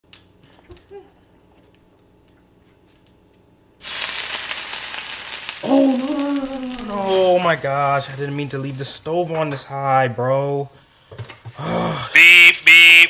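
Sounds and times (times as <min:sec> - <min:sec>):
food sizzling in a pan: 0:03.8 - 0:09.6.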